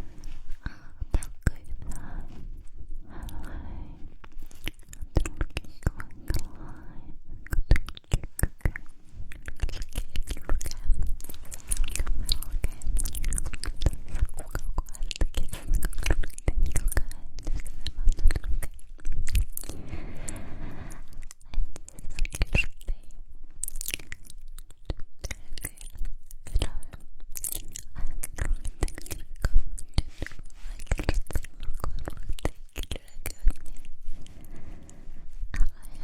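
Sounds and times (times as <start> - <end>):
breathing: 1.8 - 4.2, 6.1 - 7.4, 19.6 - 21.8, 33.9 - 36.0
wet mouth clicks: 3.0 - 36.0.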